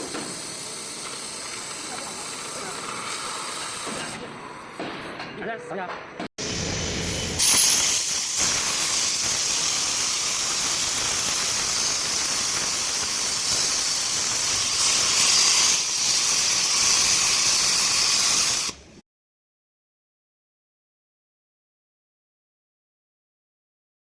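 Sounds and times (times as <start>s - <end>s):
cutting torch gas hiss: 0.0s - 5.1s, 6.4s - 19.0s.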